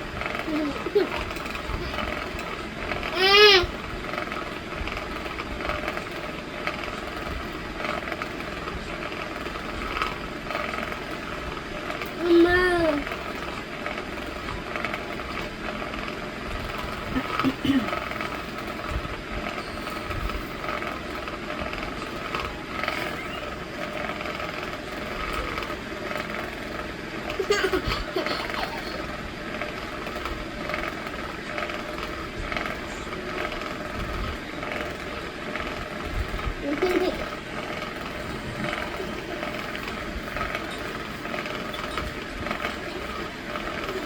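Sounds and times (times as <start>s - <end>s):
electric fan humming: 0.0s - 44.0s.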